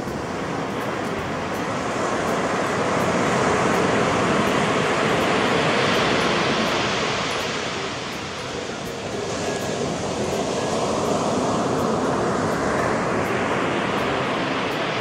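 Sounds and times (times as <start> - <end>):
ocean surf breaking: 0.0 - 15.0.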